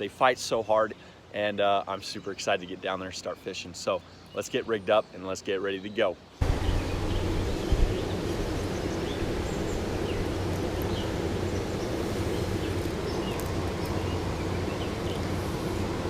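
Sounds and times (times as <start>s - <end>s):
outdoor background noise: 0.0s - 16.0s.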